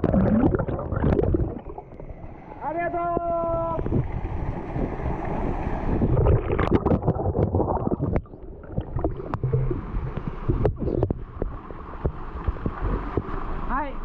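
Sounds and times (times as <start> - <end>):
wind on microphone: 0.0 - 2.2, 2.9 - 13.3
sharp knocks and splashes: 6.1 - 13.4.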